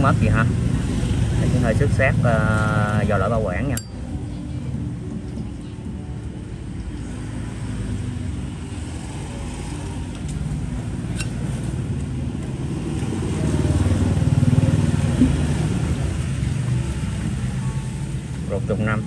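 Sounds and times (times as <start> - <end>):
motor vehicle passing: 7.5 - 18.2.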